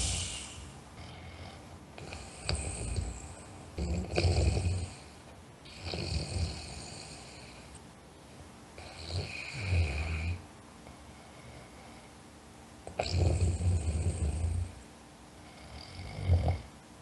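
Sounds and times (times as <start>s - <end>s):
person snoring: 0.0s - 5.1s, 5.7s - 7.6s, 13.0s - 14.7s.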